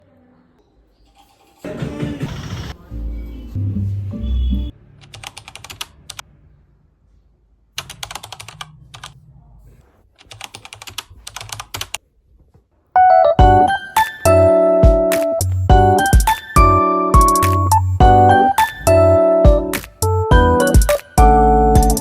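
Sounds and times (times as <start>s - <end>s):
music: 1.7s - 4.7s, 13.0s - 22.0s
typing on a keyboard: 5.0s - 6.2s, 7.8s - 9.2s, 10.2s - 12.0s.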